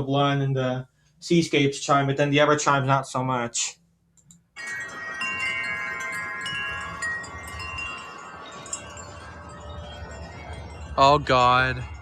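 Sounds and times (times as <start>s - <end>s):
wind chimes ringing: 4.6s - 12.0s.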